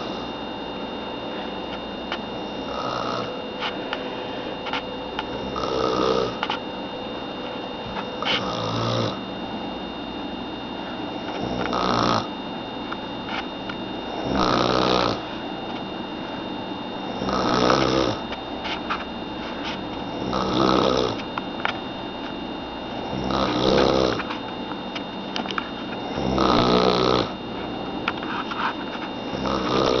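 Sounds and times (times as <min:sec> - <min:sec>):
person snoring: 0:02.6 - 0:03.4, 0:05.4 - 0:06.4, 0:08.2 - 0:09.2, 0:11.4 - 0:12.3, 0:14.2 - 0:15.2, 0:17.2 - 0:18.2, 0:20.2 - 0:21.2, 0:23.1 - 0:24.2, 0:26.1 - 0:27.4, 0:29.3 - 0:30.0.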